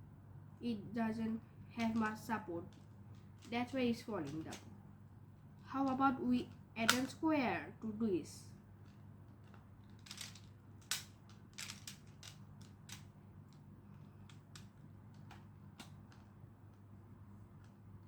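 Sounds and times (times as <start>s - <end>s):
steady low hum: 0.0s - 18.0s
plastic tiles clicking together: 9.4s - 13.1s.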